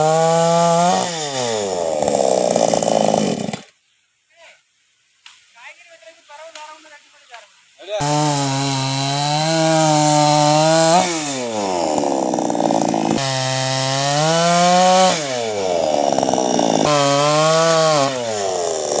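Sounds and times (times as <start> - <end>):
chainsaw cutting wood: 0.0 - 3.8, 8.0 - 19.0.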